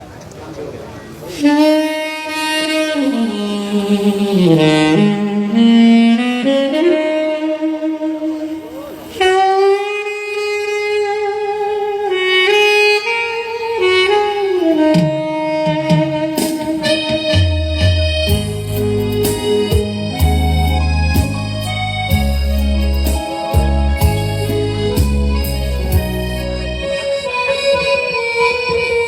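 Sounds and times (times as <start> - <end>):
saxophone slow melody: 1.3 - 29.0.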